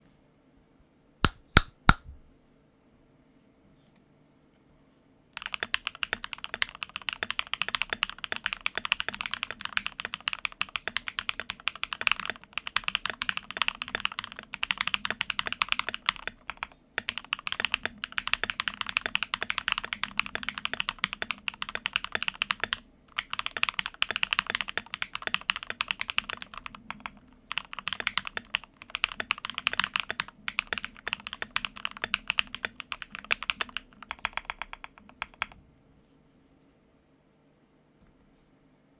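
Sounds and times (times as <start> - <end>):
fast mechanical keyboard typing: 5.4 - 35.6.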